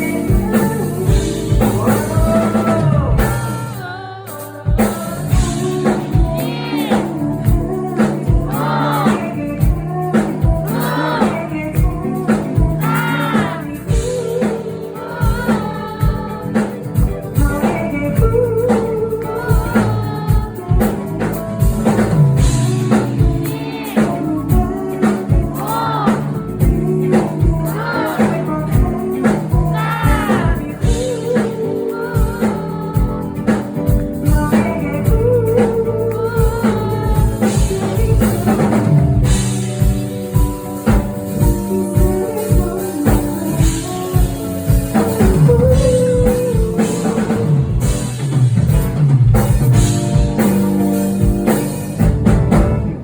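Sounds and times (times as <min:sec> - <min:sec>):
person singing: 0:00.0 - 0:48.3
drum kit beat: 0:00.0 - 0:53.0
live band playing: 0:00.0 - 0:53.0.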